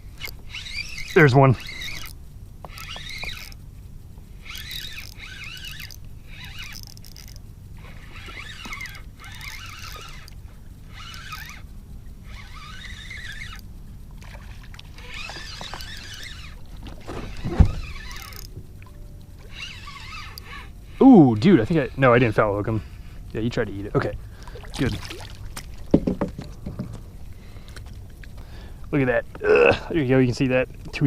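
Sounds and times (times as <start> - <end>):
fishing reel winding: 0.1 - 3.6, 4.4 - 13.7, 14.5 - 18.6, 19.4 - 22.7.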